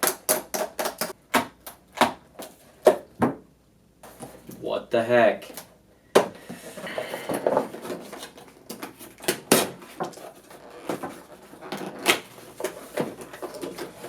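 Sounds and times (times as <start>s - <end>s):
packaging rustling and scraping: 6.4s - 14.0s.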